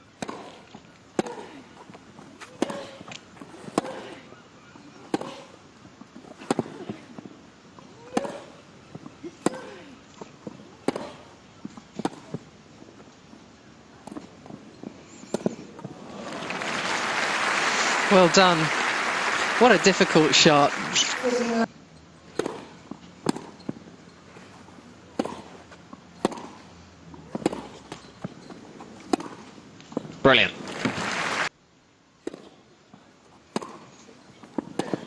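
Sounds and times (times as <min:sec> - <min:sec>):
tennis racket hitting ball: 0:00.2 - 0:04.2, 0:04.9 - 0:05.6, 0:06.2 - 0:07.3, 0:08.0 - 0:12.4, 0:22.3 - 0:23.8, 0:25.0 - 0:30.1, 0:32.2 - 0:32.6, 0:33.5 - 0:35.0
crowd applause: 0:16.0 - 0:21.7, 0:30.3 - 0:31.5.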